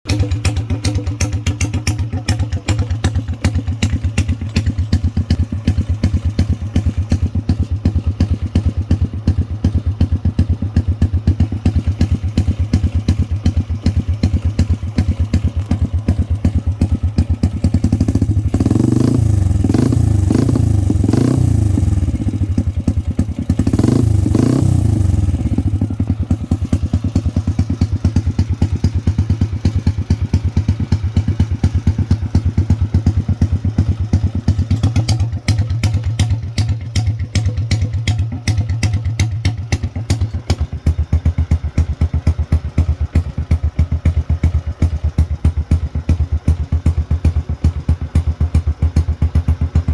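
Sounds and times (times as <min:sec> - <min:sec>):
motorcycle engine idling and revving: 0:00.0 - 0:49.9.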